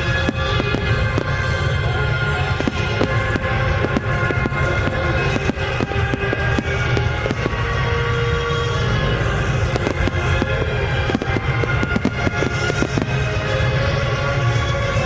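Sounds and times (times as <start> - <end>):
fireworks popping and crackling: 0.0 - 15.0
music over loudspeakers: 0.0 - 15.0.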